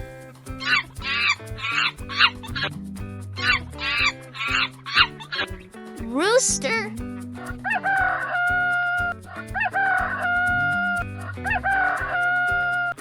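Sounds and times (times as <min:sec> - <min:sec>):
light background music: 0:00.0 - 0:13.0
rooster crowing: 0:07.6 - 0:09.0, 0:09.8 - 0:10.9.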